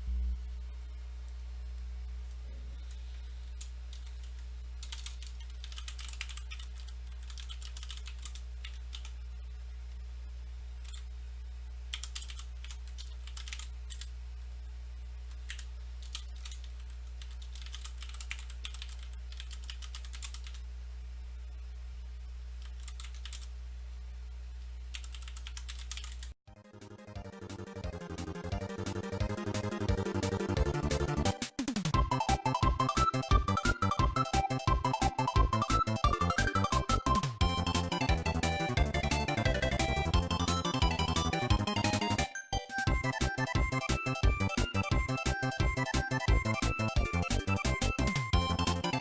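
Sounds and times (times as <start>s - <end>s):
steady low hum: 0.0s - 31.4s
computer keyboard typing: 3.6s - 9.1s, 11.9s - 14.1s, 15.4s - 20.6s, 22.6s - 23.5s, 24.9s - 26.4s.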